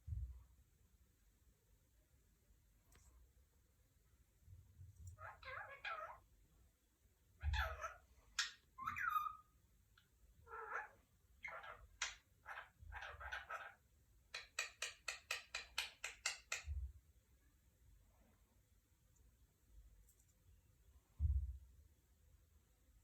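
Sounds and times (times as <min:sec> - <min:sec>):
parrot chirping and whistling: 0:08.8 - 0:09.5.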